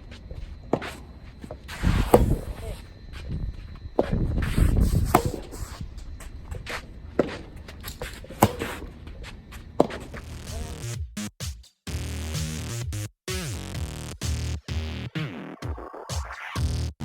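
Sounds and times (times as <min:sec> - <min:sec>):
wind buffeting microphone: 0:01.8 - 0:06.7
electronic music: 0:10.2 - 0:17.0.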